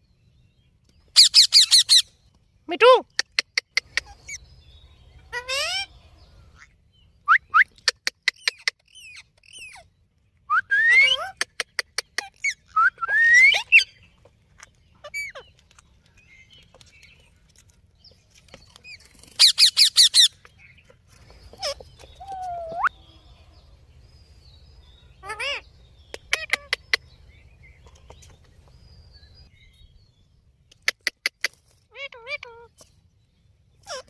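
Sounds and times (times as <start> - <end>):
parrot squawking and chattering: 1.1 - 2.1, 5.3 - 5.9, 7.7 - 9.9, 10.9 - 12.8, 15.0 - 15.6, 19.3 - 20.4, 21.5 - 22.9, 25.2 - 27.0, 30.7 - 32.7, 33.8 - 34.0.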